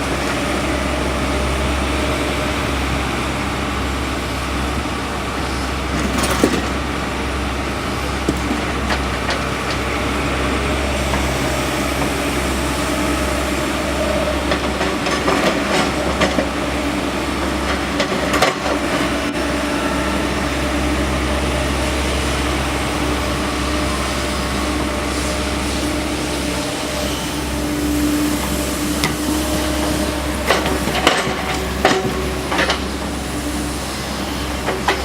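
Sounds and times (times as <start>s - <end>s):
excavator diesel engine: 0.0s - 35.0s
knocks and clanks of boulders: 5.9s - 6.8s, 8.1s - 9.9s.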